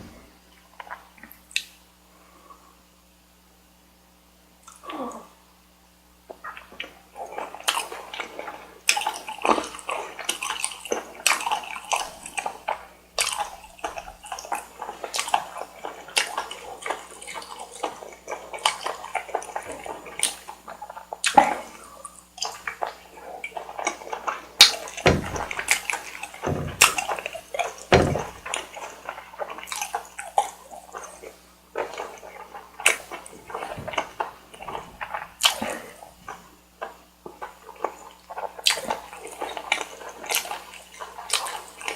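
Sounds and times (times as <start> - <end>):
mouth clicks and lip smacks: 0.5 - 1.8
wet chewing: 6.3 - 41.9
deep thuds: 24.2 - 29.3, 32.8 - 36.4.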